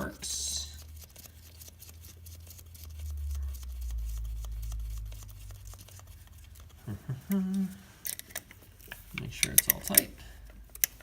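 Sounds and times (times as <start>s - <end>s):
low rumble: 2.6s - 7.3s
small metal clicks: 8.0s - 11.0s.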